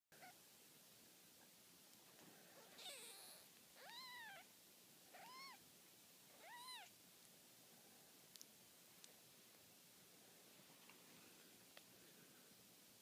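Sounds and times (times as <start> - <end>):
kitten crying: 2.6 - 4.5, 5.1 - 5.6, 6.3 - 6.9
kitten mewing: 2.6 - 4.5, 5.1 - 5.6, 6.3 - 6.9.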